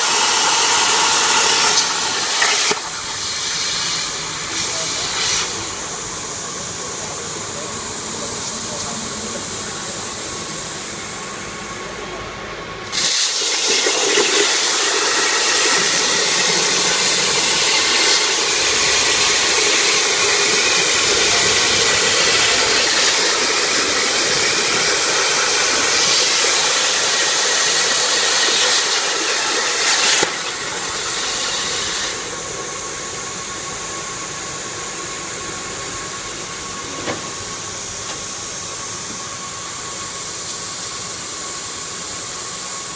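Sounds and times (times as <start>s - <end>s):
plasma cutter arc hissing: 0.0s - 11.6s, 12.8s - 42.9s.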